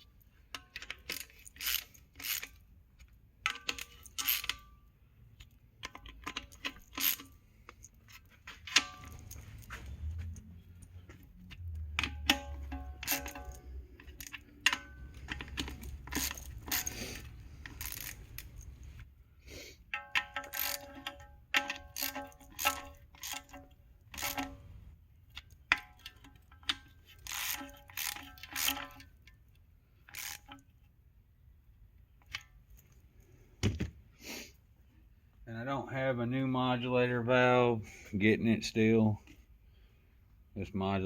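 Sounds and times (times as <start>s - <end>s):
metal tools clinking: 5.8s - 19.0s, 20.0s - 24.6s.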